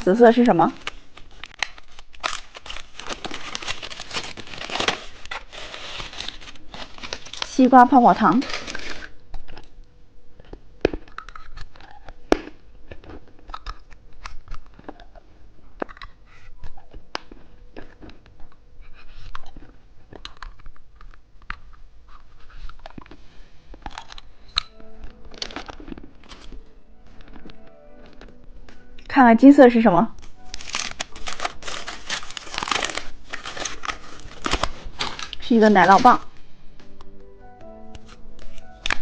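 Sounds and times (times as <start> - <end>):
chewing bubble gum crackles: 8.9 - 26.6.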